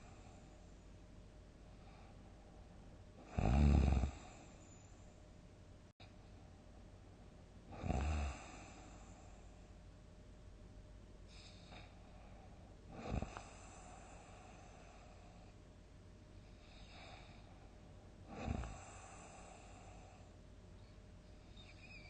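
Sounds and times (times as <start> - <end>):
faint breath: 1.7 - 2.7, 8.3 - 9.7, 11.3 - 15.6, 16.4 - 22.0
person snoring: 3.2 - 4.4, 7.7 - 9.0, 18.3 - 19.8.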